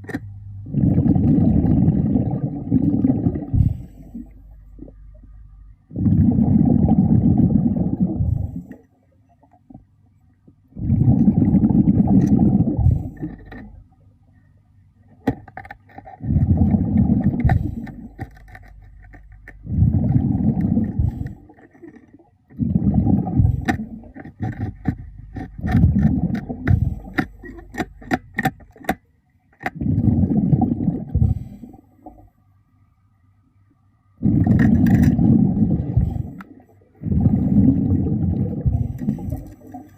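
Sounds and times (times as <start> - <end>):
underwater bubbling exhales: 0.6 - 8.8, 10.7 - 13.8, 16.2 - 18.6, 19.5 - 27.9, 29.6 - 32.3, 34.2 - 39.9.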